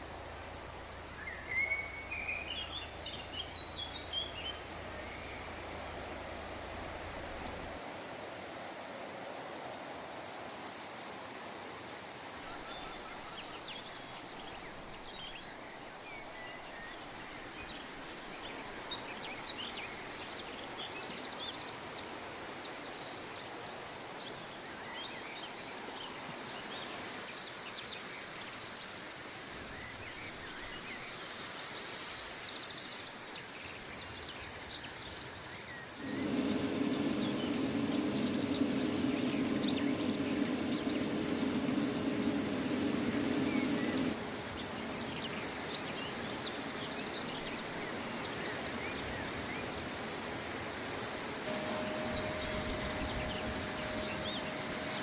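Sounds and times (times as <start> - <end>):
steady rushing hiss: 35.9 - 55.0.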